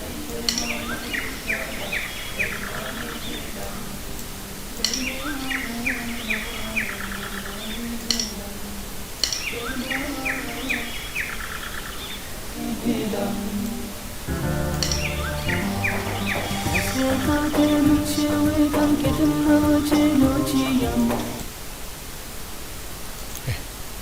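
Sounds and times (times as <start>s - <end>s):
soft background music: 14.3s - 21.4s
bird chirps: 14.7s - 19.1s.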